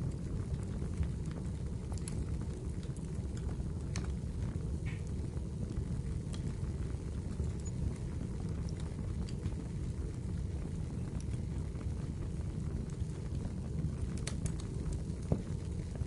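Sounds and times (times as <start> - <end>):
fire crackles: 0.0 - 16.0
fire low rumble: 0.0 - 16.0.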